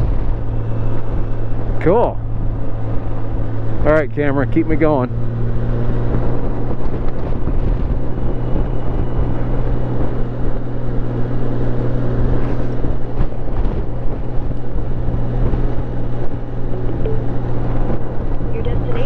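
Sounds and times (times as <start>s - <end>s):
motorcycle engine cruising: 0.0s - 19.0s
wind noise on microphone: 5.2s - 19.0s.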